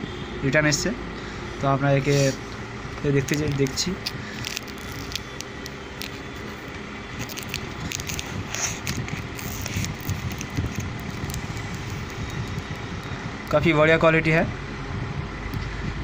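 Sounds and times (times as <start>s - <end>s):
steady background noise: 0.0s - 16.0s
handling clicks and crackles: 2.5s - 13.1s
packaging rustle: 3.2s - 12.9s.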